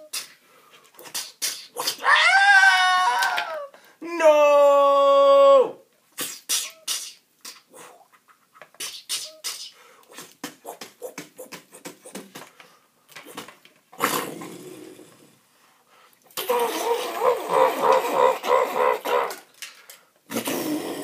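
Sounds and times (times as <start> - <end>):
mouth-made clicks and hit noises: 8.6 - 13.8
voiced growl: 14.0 - 15.4, 16.4 - 19.4.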